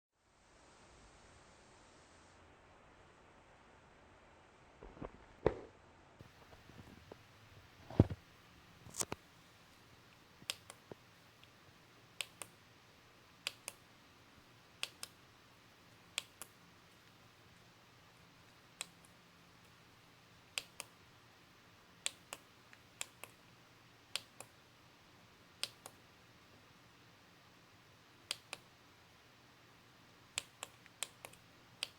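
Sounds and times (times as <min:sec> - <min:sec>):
sharp clicks in pairs: 0:10.1 - 0:11.6, 0:12.2 - 0:12.6, 0:13.4 - 0:13.9, 0:14.8 - 0:15.2, 0:16.1 - 0:17.1, 0:20.5 - 0:21.0, 0:22.0 - 0:23.6, 0:24.2 - 0:24.6, 0:25.6 - 0:26.0, 0:28.3 - 0:28.7, 0:30.3 - 0:31.9.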